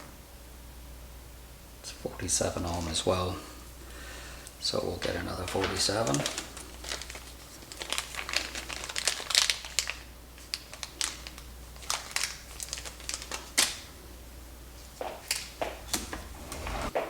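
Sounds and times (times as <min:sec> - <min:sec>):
low mains hum: 0:00.0 - 0:17.0
packaging crinkling and rustling: 0:02.5 - 0:03.3, 0:04.6 - 0:13.9.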